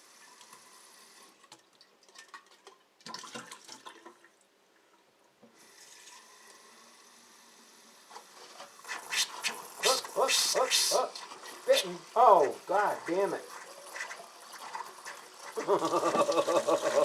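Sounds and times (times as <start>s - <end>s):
faucet water running into container: 5.5s - 17.0s.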